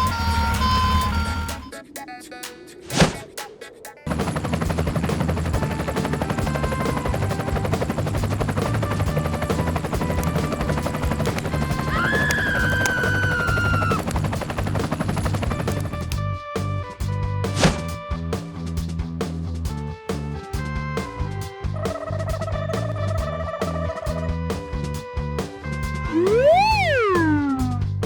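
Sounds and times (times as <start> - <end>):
whistle-like tone: 0.0 - 1.9, 26.1 - 27.9
sharp thump: 2.9 - 3.3, 17.5 - 17.9
background music: 4.2 - 18.7.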